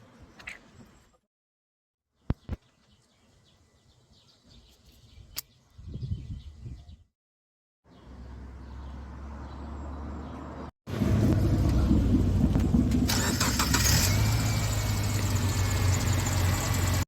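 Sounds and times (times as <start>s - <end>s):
car engine humming: 10.9s - 17.0s.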